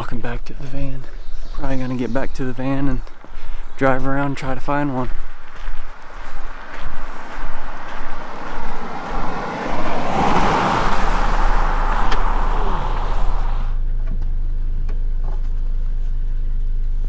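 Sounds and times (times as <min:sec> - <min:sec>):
low engine hum: 0:02.5 - 0:17.0
vehicle passing on road: 0:04.3 - 0:13.8.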